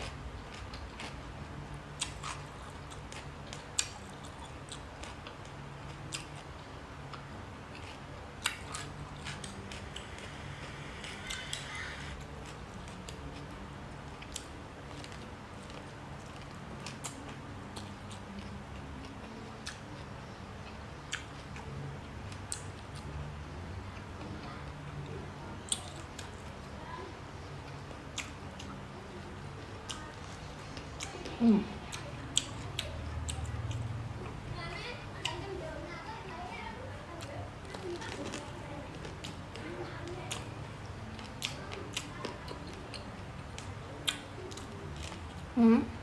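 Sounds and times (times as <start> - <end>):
person chewing: 0.0 - 13.5, 27.6 - 34.4, 40.3 - 45.4.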